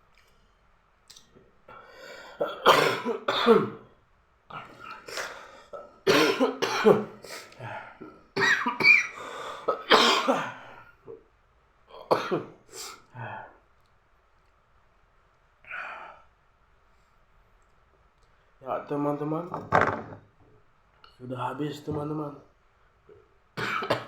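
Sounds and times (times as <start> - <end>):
man coughing: 2.4 - 3.9, 4.9 - 7.5, 8.4 - 10.7, 12.1 - 12.5, 23.6 - 24.0
throat clearing: 23.6 - 24.0.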